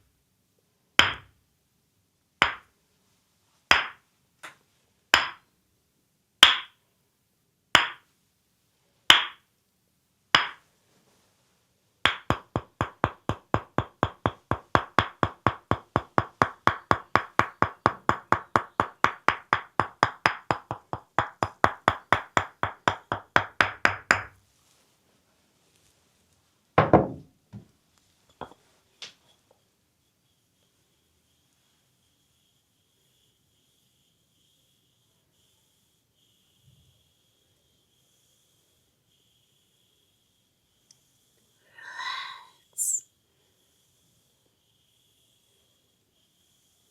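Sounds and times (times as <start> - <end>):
fast chopping massage strikes: 12.1 - 24.2.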